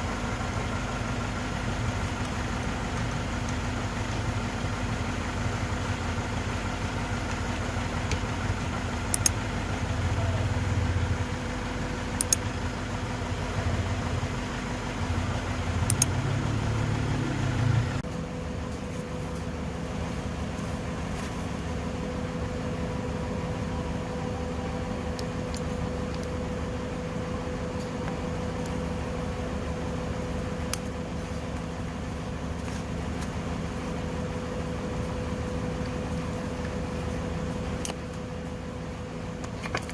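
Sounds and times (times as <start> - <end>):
engine idling: 0.0 - 39.9
steady hum: 0.0 - 39.9
sharp clicks: 9.1 - 9.4, 12.2 - 12.5, 15.8 - 16.2.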